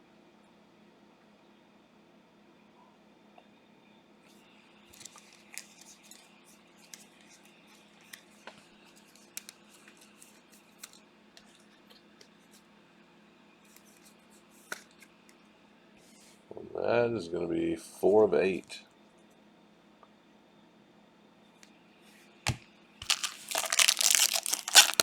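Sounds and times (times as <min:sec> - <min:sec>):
foil wrappers crinkling: 0:04.9 - 0:06.2, 0:23.0 - 0:25.0.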